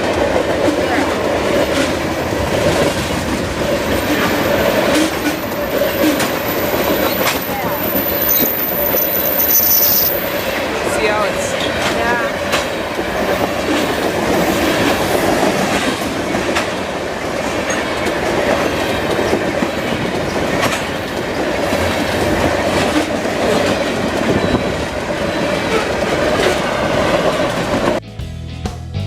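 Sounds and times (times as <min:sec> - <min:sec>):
train wheels clacking on rails: 0:00.0 - 0:28.0.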